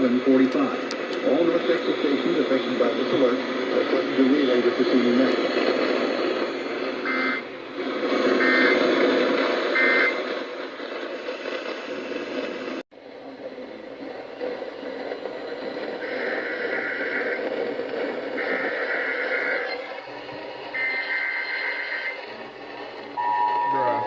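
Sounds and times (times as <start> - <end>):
radio hiss: 0.0 - 24.0
digital data bursts: 18.3 - 22.2, 23.2 - 24.0.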